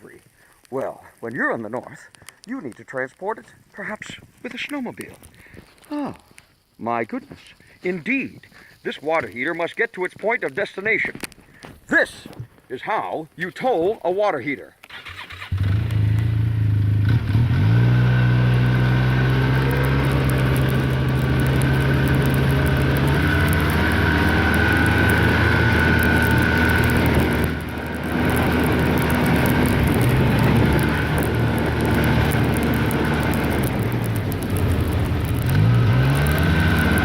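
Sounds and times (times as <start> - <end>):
snowmobile engine revving: 15.0 - 37.0.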